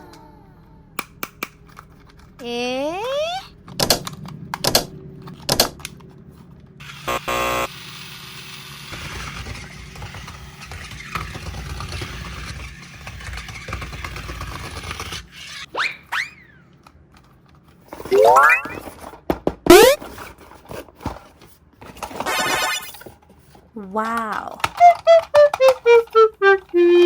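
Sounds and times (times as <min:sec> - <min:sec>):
sharp plastic clicks: 0:03.7 - 0:06.0
toy motor running: 0:06.8 - 0:15.7, 0:24.7 - 0:27.0
short buzzy tone: 0:19.7 - 0:20.0, 0:24.8 - 0:27.0.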